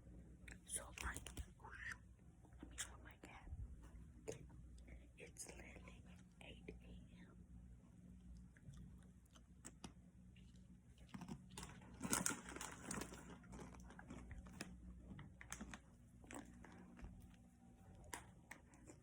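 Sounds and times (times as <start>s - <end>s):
crinkling rustle: 10.4s - 17.4s.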